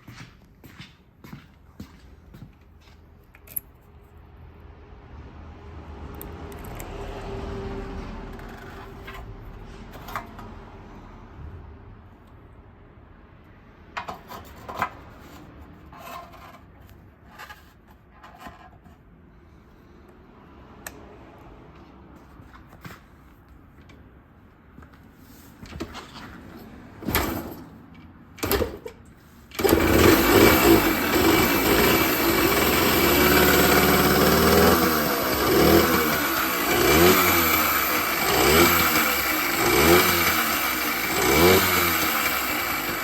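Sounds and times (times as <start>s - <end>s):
kick-start strokes: 29.6s - 43.0s
two-stroke engine running: 29.6s - 43.0s.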